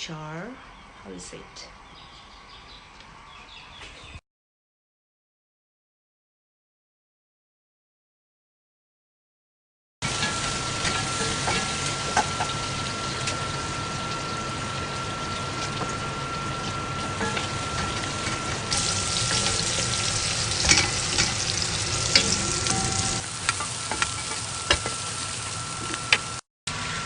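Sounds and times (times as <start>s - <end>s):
chickpeas sizzling in a pan: 10.0s - 26.4s
utensil scraping a pan: 10.1s - 12.6s, 16.6s - 25.1s.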